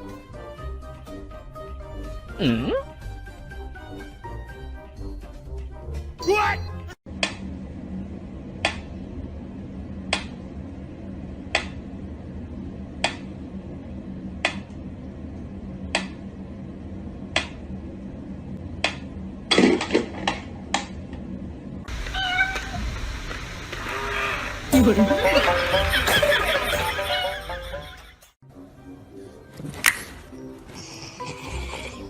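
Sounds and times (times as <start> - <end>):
steady low hum: 7.1 - 22.1.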